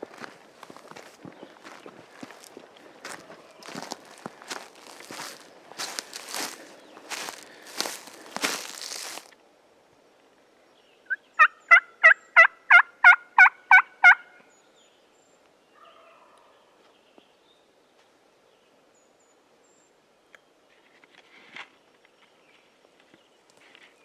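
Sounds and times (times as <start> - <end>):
turkey hen yelps: 11.4 - 14.3.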